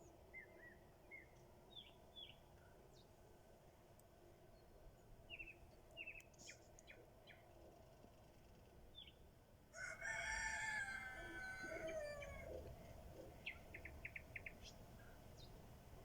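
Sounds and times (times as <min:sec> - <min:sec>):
rooster crowing: 0:09.7 - 0:12.7.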